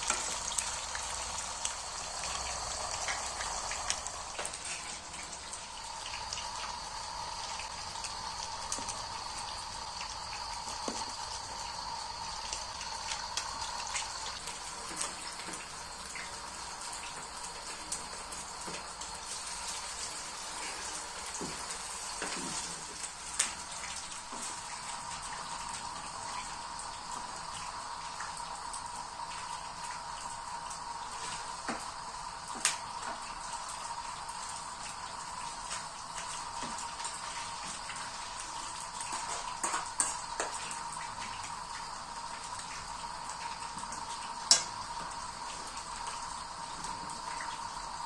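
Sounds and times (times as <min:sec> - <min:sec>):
patties sizzling in oil: 0:00.0 - 0:48.0.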